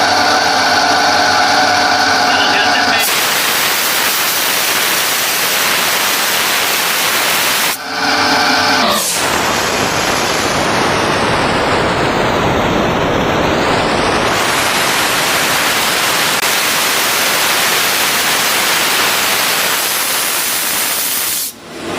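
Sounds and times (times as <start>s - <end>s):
rushing hiss of spray: 2.9s - 7.8s, 14.3s - 21.6s.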